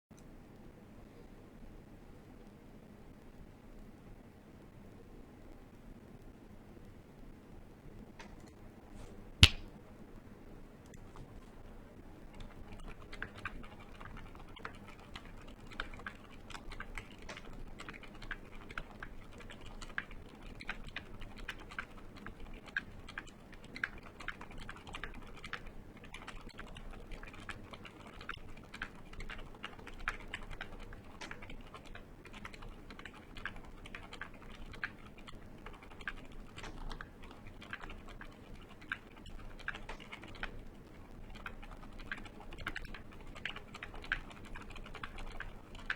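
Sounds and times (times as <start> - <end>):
fast typing on mechanical keyboard: 12.4 - 40.6, 41.2 - 45.9.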